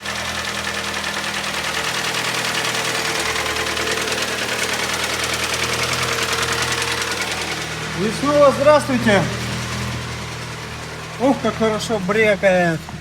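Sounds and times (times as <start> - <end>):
car engine idling with knock: 0.0 - 13.0.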